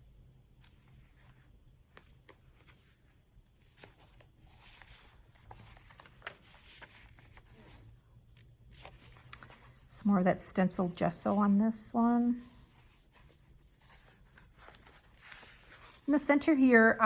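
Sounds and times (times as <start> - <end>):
paper pages rustling and turning: 0.6 - 7.9, 8.7 - 16.6.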